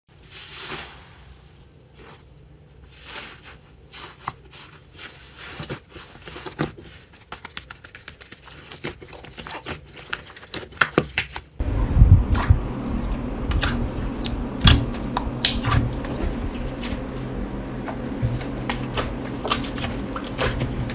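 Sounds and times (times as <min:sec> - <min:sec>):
slime squelching thuds: 0:12.0 - 0:20.9.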